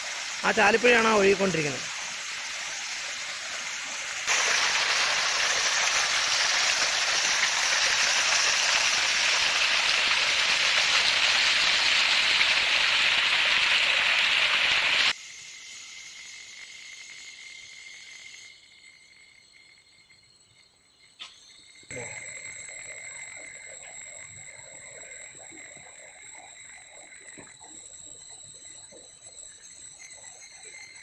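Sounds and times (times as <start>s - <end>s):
waterfall rushing and splashing: 4.3s - 10.0s
thin steady whine: 21.9s - 31.0s.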